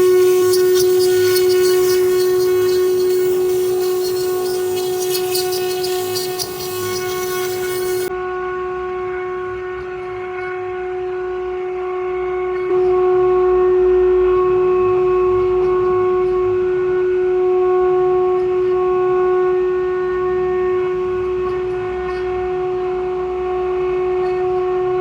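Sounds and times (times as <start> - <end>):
router spindle whining carving wood: 0.0 - 8.1.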